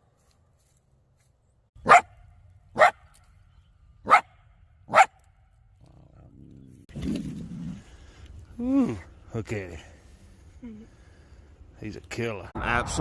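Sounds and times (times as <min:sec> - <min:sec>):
coyote barking: 0:01.8 - 0:03.1, 0:04.0 - 0:05.3.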